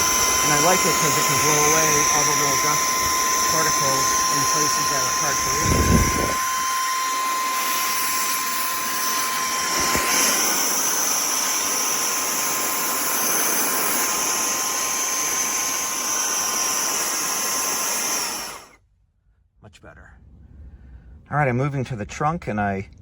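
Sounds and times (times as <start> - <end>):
handheld vacuum motor whine: 0.0 - 18.8.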